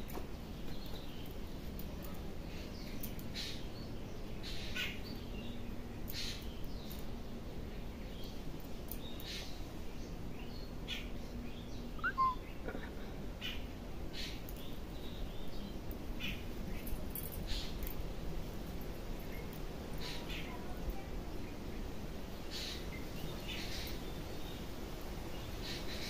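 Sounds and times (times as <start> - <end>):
birds harsh calls: 10.8 - 14.8
rising bird chirp: 11.9 - 12.6.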